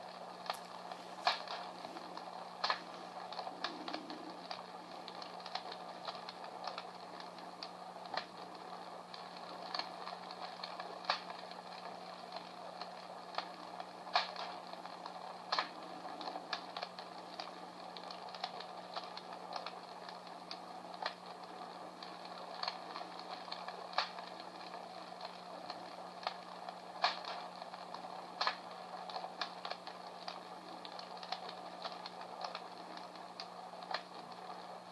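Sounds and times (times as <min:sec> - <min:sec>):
low hum: 0:00.0 - 0:34.9
recorded fire crackling: 0:00.0 - 0:34.9
steady hiss: 0:00.0 - 0:34.9.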